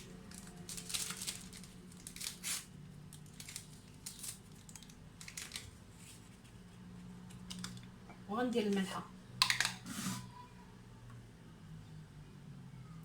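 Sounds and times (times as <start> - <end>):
packet rustles and scrapes: 0.3 - 6.6.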